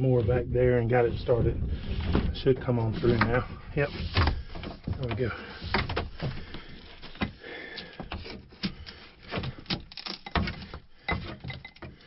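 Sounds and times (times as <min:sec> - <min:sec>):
tubing dragging against hull: 0:00.0 - 0:07.2.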